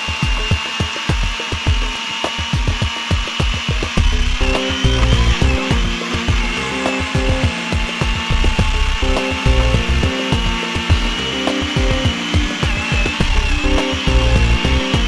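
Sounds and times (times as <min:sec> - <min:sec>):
background music with bass beat: 0:00.0 - 0:15.0
chainsaw cutting wood: 0:00.0 - 0:15.0.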